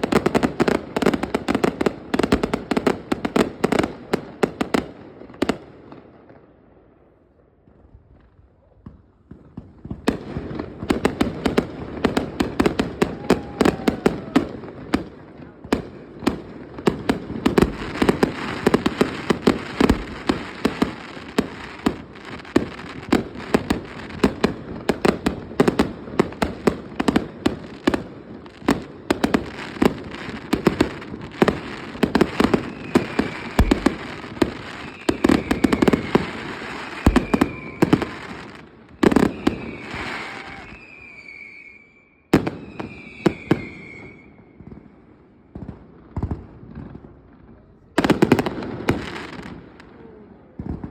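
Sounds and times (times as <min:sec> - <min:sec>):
fireworks bangs: 0:00.0 - 0:06.6, 0:07.6 - 0:50.9
falling whistles: 0:32.6 - 0:33.8, 0:34.8 - 0:38.1, 0:39.0 - 0:44.6.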